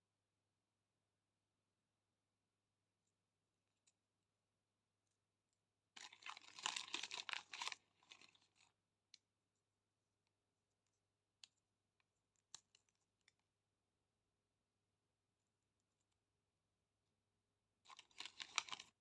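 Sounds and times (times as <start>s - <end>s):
candy wrapper crackling and tearing: 6.0s - 8.7s, 17.9s - 19.0s
light clicks and taps of packaging: 6.0s - 9.2s, 12.3s - 13.4s, 17.9s - 19.0s.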